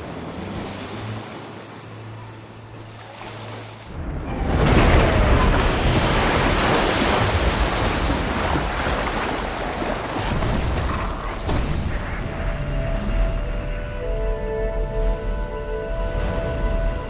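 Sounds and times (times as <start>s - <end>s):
ocean wave breaking on beach: 0.0s - 10.9s
water rushing and washing: 0.0s - 13.8s.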